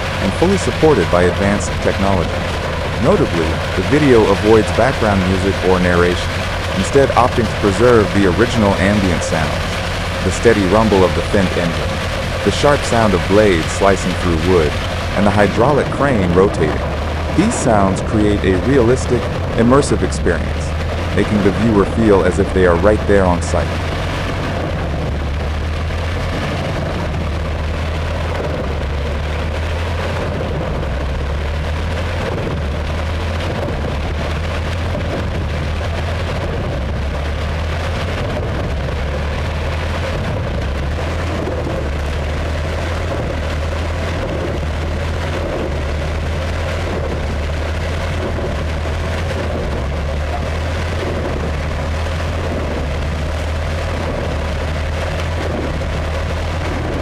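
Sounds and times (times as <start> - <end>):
tractor engine rumbling: 0.0 - 57.0.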